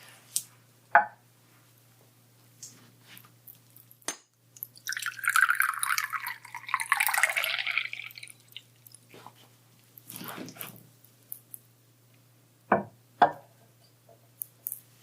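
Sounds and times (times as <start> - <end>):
tea pouring into a cup: 4.7 - 8.8.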